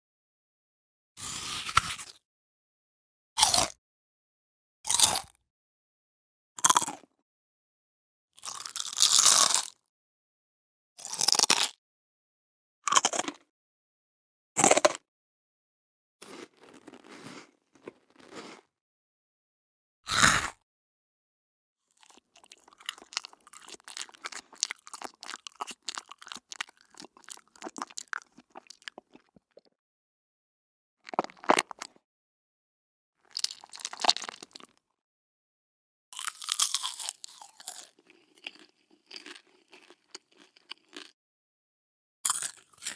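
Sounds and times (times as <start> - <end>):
crunchy bites into hard food: 1.2 - 2.2, 3.4 - 3.8, 4.9 - 5.4, 6.6 - 7.1, 8.4 - 9.8, 11.0 - 11.8, 12.8 - 13.5, 14.6 - 15.0, 16.2 - 18.7, 20.1 - 20.6, 21.9 - 29.7, 31.0 - 32.0, 33.3 - 34.8, 36.2 - 41.2, 42.2 - 42.9.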